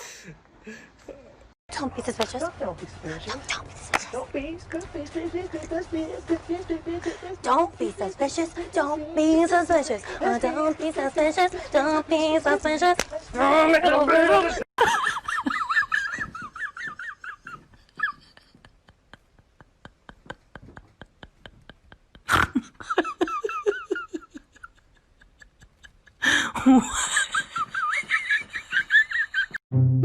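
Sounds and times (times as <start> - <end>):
high-pitched laughing: 14.1 - 29.6.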